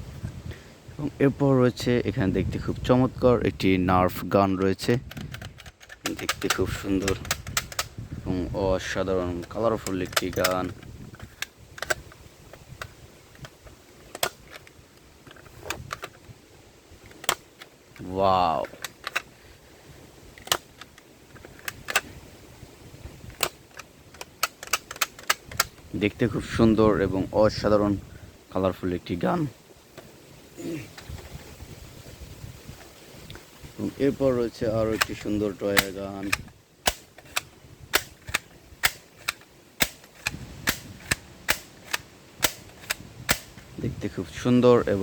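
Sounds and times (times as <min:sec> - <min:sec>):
toy gun firing snapping shots: 0:35.8 - 0:43.5.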